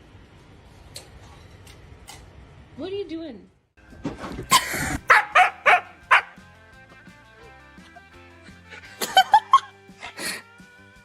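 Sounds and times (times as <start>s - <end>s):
background music: 4.5s - 11.0s
dog barking: 5.0s - 6.4s.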